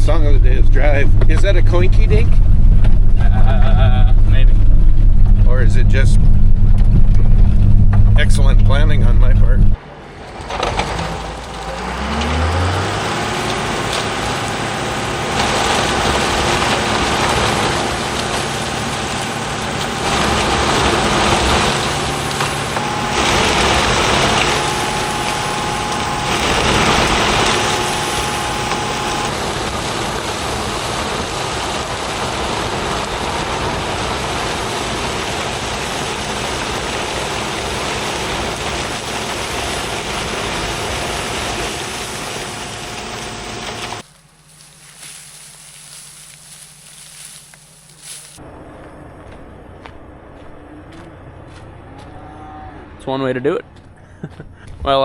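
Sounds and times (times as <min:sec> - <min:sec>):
vehicle engine speeding up: 0:00.0 - 0:10.2, 0:11.4 - 0:29.8
road rumble: 0:00.0 - 0:53.0.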